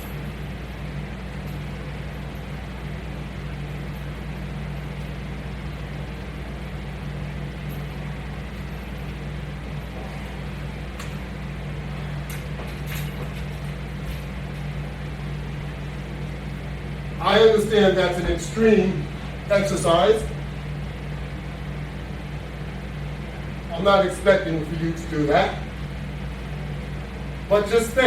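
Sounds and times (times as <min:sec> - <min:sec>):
low hum: 0:00.0 - 0:28.0.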